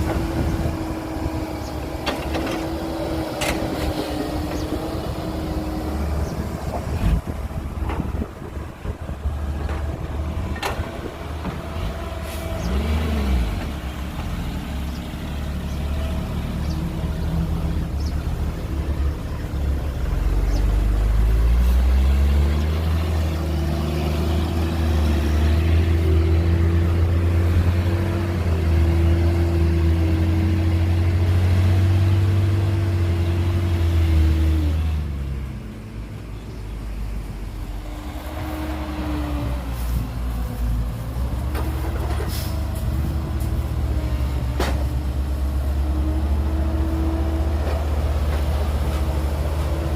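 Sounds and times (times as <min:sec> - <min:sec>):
heavy diesel engine revving: 0:00.0 - 0:49.9.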